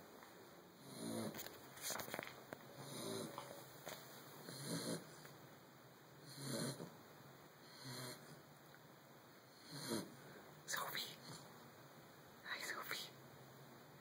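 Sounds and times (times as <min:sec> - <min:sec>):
person snoring: 0:00.8 - 0:01.4, 0:02.8 - 0:03.4, 0:04.4 - 0:05.1, 0:06.2 - 0:06.9, 0:09.6 - 0:10.2.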